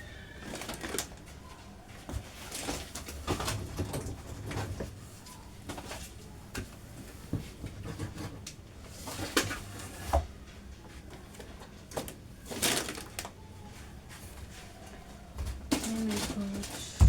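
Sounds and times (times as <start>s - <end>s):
packages knocking and clicking: 0.4s - 1.4s, 2.0s - 5.0s, 15.4s - 17.0s.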